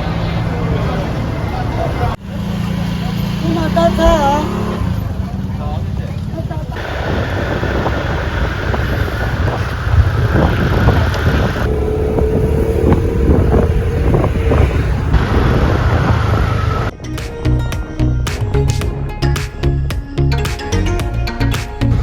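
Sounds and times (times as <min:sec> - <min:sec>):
vehicle engine rumble: 0:00.0 - 0:22.0
wind buffeting microphone: 0:06.4 - 0:17.0
music: 0:16.9 - 0:22.0.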